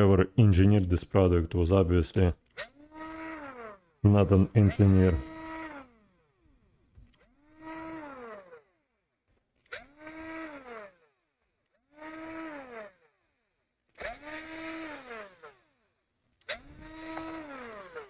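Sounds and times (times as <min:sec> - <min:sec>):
electric screwdriver whine: 0:12.1 - 0:12.9, 0:14.0 - 0:15.6, 0:16.4 - 0:18.0.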